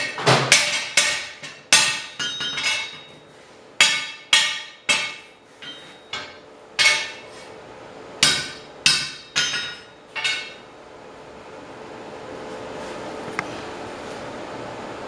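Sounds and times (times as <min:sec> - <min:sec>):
hammer striking metal on anvil: 0:00.0 - 0:03.2, 0:03.8 - 0:07.3, 0:08.2 - 0:10.6.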